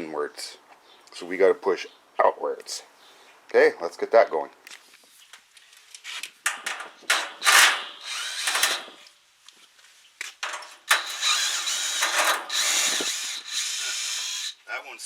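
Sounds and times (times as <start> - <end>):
power drill driving screws: 7.1 - 9.1, 10.4 - 14.6.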